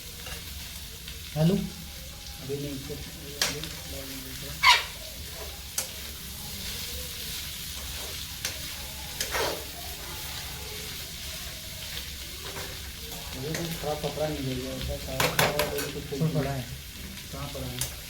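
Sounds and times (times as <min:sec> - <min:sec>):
vegetables sizzling in oil: 0:00.0 - 0:18.0
spoon scraping a pan: 0:03.4 - 0:11.0, 0:11.9 - 0:13.8.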